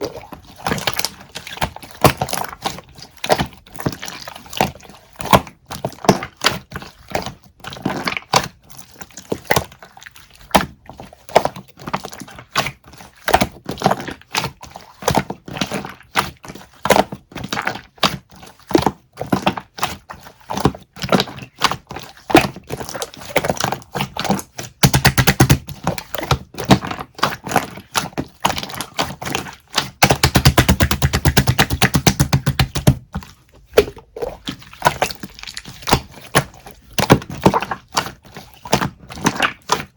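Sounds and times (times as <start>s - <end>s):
rapid tapping: 24.8s - 25.6s, 30.0s - 33.0s
taps on a hard surface: 24.8s - 25.6s, 30.0s - 33.0s.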